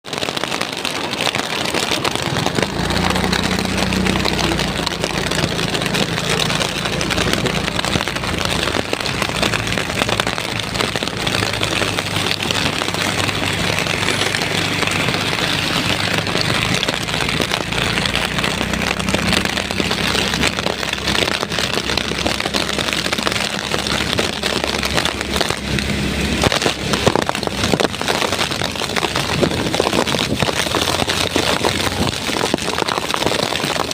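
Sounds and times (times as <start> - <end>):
heavy rain pouring: 0.0 - 33.9
low engine hum: 0.8 - 33.9.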